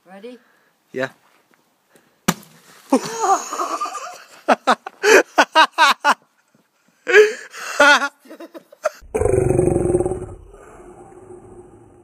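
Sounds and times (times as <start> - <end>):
people laughing: 3.0 - 6.2.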